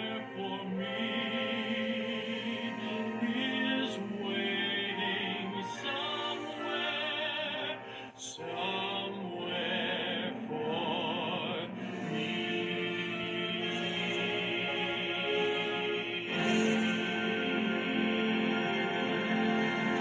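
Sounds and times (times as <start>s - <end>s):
orchestral film music: 0.0s - 20.0s.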